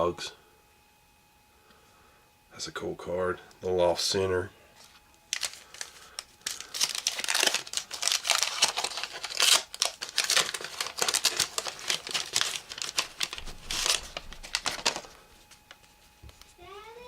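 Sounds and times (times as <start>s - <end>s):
wrapper crinkling: 5.3s - 16.5s.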